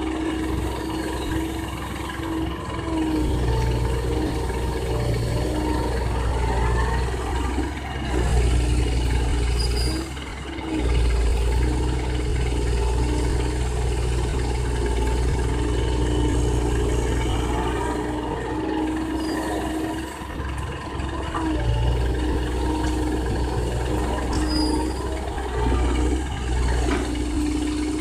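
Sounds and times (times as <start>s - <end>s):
excavator diesel engine running: 0.0s - 28.0s.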